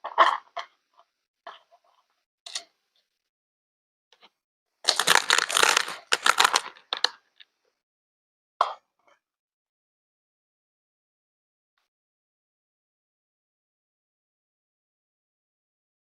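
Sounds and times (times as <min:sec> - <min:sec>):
crackling crinkling burst: 0:04.9 - 0:07.1.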